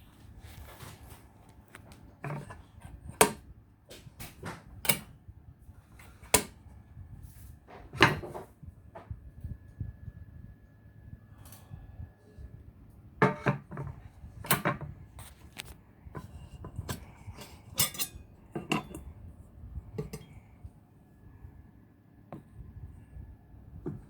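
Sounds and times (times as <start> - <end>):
hard objects knocking and clicking: 20.0 - 20.3.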